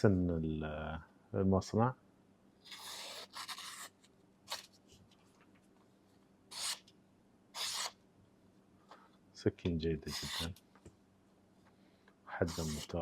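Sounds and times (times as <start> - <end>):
pocket knife rubbing and scraping: 2.6 - 4.7, 6.5 - 6.8, 7.6 - 8.0, 10.1 - 10.6, 12.4 - 13.0.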